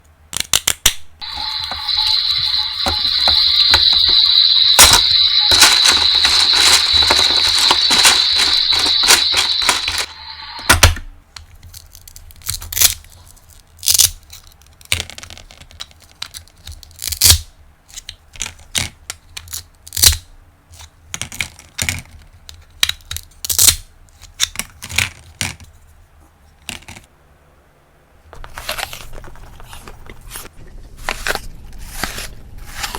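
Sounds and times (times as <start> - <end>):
toy apples crunching clicks: 0.3 - 10.9
fast clicking: 1.2 - 10.8
high-pitched whine: 1.2 - 11.0.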